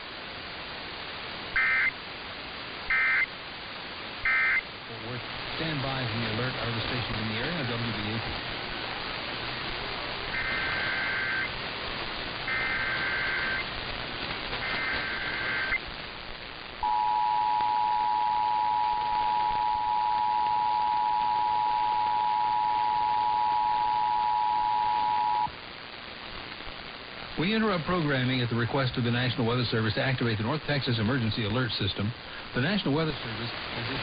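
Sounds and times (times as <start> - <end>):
hissing radio broadcast: 0.0 - 34.0
data bursts: 1.6 - 2.0, 2.9 - 3.3, 4.2 - 4.6, 10.3 - 11.6, 12.3 - 13.8, 14.5 - 15.9, 16.8 - 25.5
two-tone attention signal: 16.8 - 25.5.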